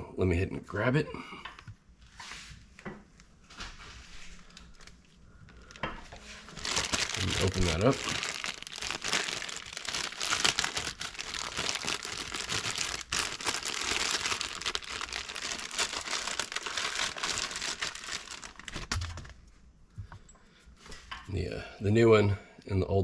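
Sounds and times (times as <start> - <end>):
packaging crinkling and tearing: 6.5 - 19.4.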